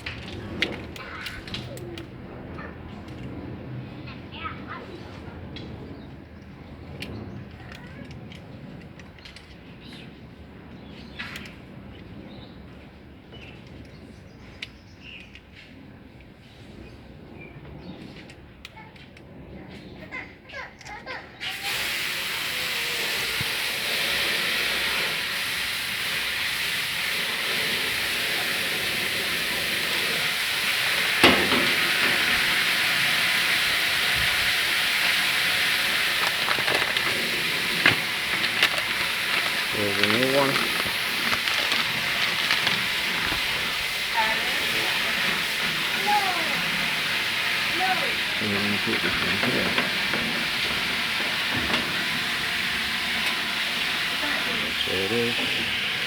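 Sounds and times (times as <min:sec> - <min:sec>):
steady hiss: 0:21.4 - 0:56.0.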